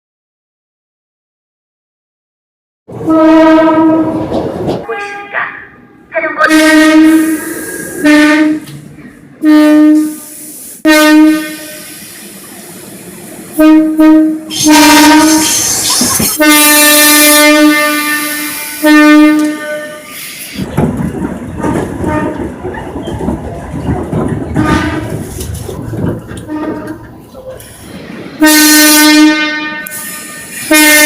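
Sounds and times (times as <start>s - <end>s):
train rushing on rails: 2.9s - 31.0s
electric train horn blasts: 3.0s - 4.2s, 6.4s - 8.7s, 9.4s - 12.0s, 13.6s - 15.8s, 16.4s - 20.2s, 24.6s - 25.2s, 26.4s - 27.0s, 28.4s - 31.0s.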